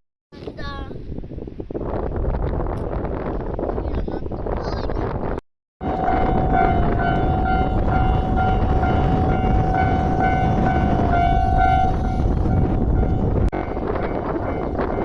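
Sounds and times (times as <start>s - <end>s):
level-crossing warning bell: 5.8s - 15.0s
passing train rumble: 5.8s - 15.0s.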